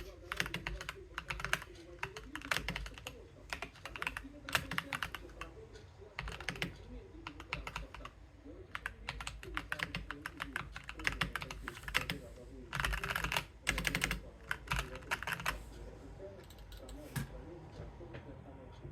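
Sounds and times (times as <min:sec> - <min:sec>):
mechanical keyboard clacking: 0:00.0 - 0:05.5, 0:06.2 - 0:08.1, 0:08.7 - 0:15.6.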